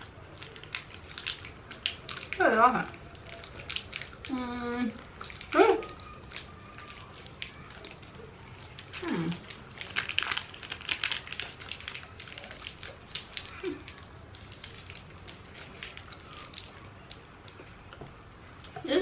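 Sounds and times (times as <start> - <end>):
snack wrapper crackling: 0.0 - 18.8.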